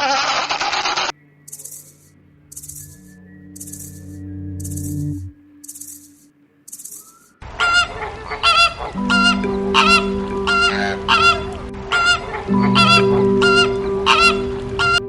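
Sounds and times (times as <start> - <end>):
steady background music tone: 1.1 - 15.0
goose honking: 7.6 - 15.0.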